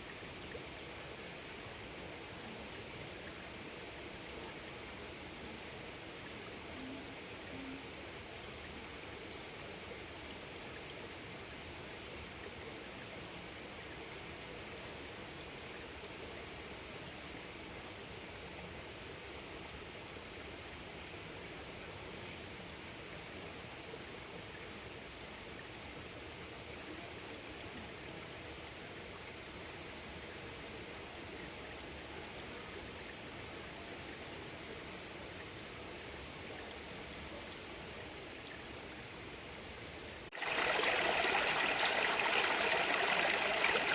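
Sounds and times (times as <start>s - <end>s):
stream water flowing: 0.0s - 43.9s.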